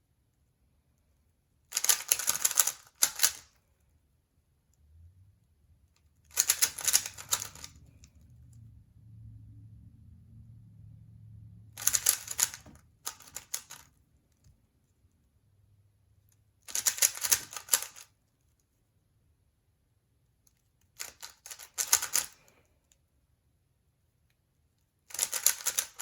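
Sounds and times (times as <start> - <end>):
puzzle cube plastic clicking: 1.7 - 3.6, 6.0 - 8.0, 11.8 - 14.5, 16.6 - 18.1, 20.5 - 22.5, 25.1 - 26.0.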